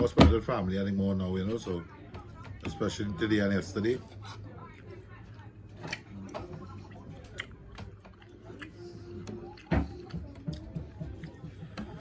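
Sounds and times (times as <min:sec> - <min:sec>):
person chewing: 0:04.2 - 0:12.0.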